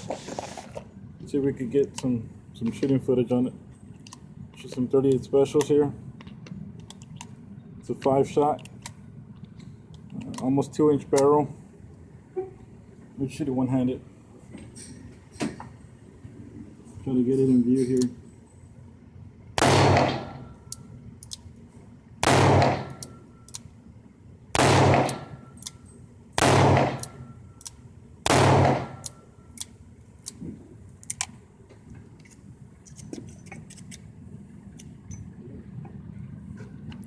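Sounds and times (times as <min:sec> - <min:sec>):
revolver gunshots: 0:19.6 - 0:20.5, 0:22.2 - 0:23.0, 0:24.6 - 0:25.4, 0:26.4 - 0:27.2, 0:28.2 - 0:29.1.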